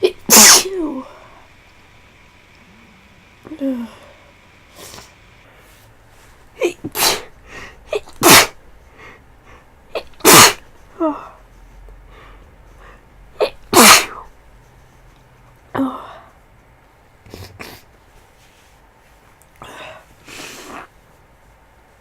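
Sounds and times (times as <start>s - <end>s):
woman sneezing: 0.0s - 1.2s, 6.6s - 7.3s, 7.9s - 8.6s, 9.9s - 11.3s, 13.4s - 14.3s.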